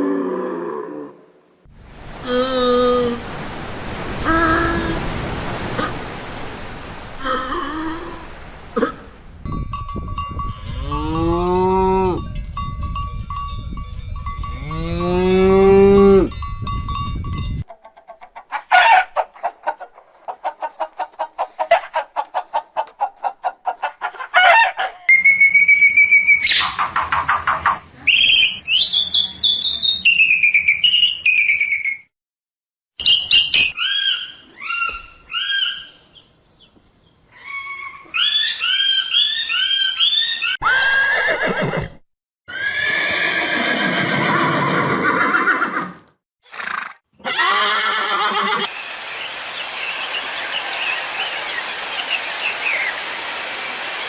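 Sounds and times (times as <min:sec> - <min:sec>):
horses whinnying: 0:39.6 - 0:48.7.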